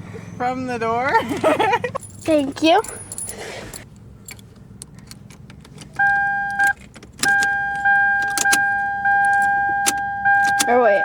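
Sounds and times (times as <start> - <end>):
car keys jangling: 1.0 - 11.0
car electronic warning tone: 5.9 - 11.0.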